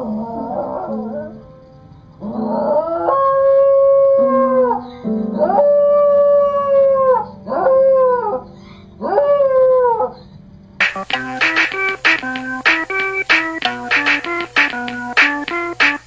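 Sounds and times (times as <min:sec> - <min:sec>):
music playing: 0:10.8 - 0:16.0.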